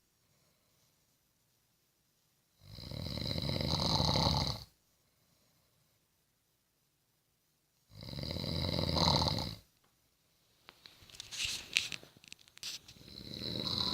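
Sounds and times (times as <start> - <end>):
loud rattling snore: 2.6 - 4.7, 8.0 - 9.6, 13.0 - 13.9.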